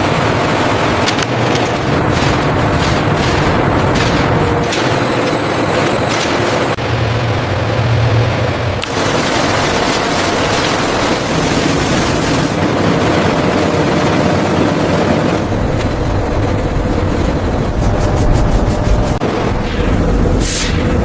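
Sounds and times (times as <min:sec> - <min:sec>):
factory machinery running: 0:00.0 - 0:21.0
deep rumble: 0:15.0 - 0:21.0.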